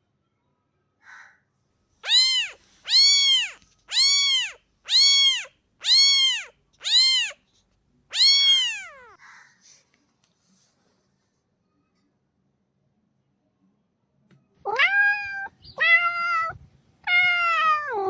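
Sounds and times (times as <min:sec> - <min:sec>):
cat meowing: 0:02.0 - 0:07.4, 0:08.1 - 0:09.2, 0:14.7 - 0:18.0.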